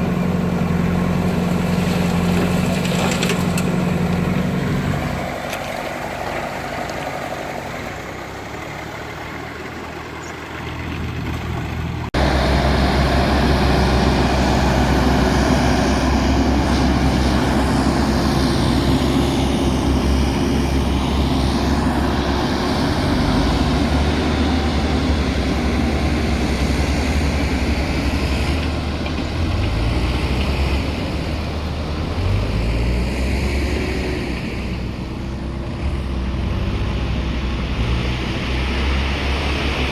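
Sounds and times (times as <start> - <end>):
heavy machinery diesel engine running: 0.0 - 39.9.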